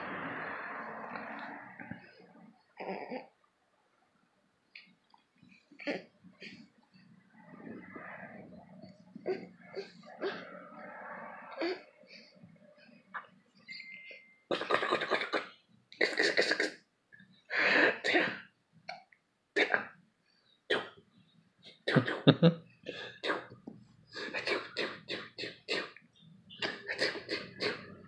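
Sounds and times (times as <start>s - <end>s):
baby grunting: 2.8s - 3.3s
baby coughing: 14.5s - 16.8s, 26.6s - 27.8s.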